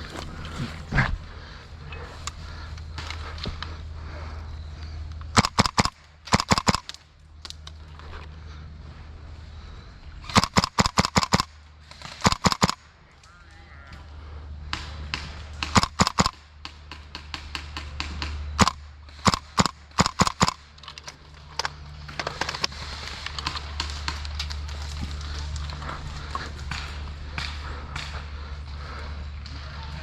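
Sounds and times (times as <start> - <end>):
steady low rumble: 0.0 - 30.0
airsoft guns firing: 5.3 - 7.0, 10.3 - 12.9, 14.7 - 20.8.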